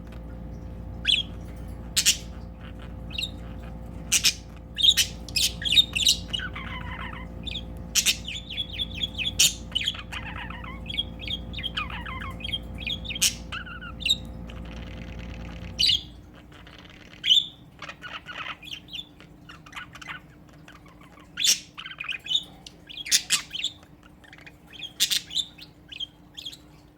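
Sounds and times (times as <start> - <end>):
low background hum: 0.0 - 26.9
budgerigar chattering and warbling: 1.0 - 26.8.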